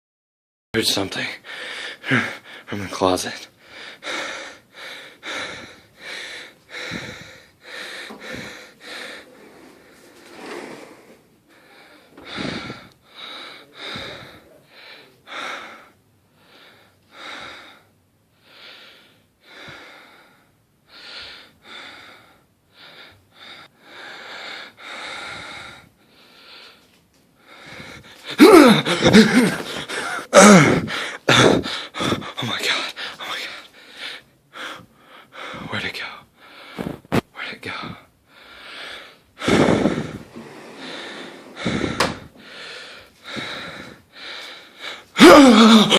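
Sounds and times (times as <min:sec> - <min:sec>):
heavy wheezing breathing: 0:01.4 - 0:02.8, 0:03.5 - 0:45.9
loud vocal outburst: 0:28.3 - 0:29.5, 0:45.2 - 0:45.9.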